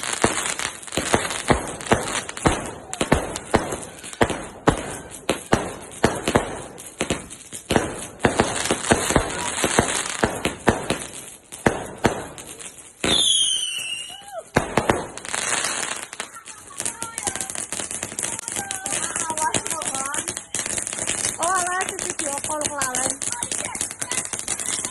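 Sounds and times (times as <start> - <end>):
fireworks banging and crackling: 0.0 - 24.9
firework falling whistle: 13.1 - 14.5.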